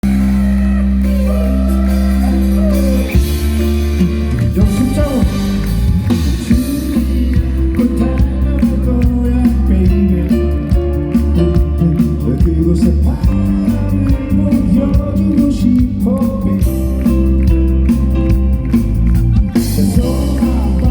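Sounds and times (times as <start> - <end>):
person singing: 0.0 - 17.5, 19.3 - 20.9
band playing: 0.0 - 20.9
held chord: 0.0 - 20.9.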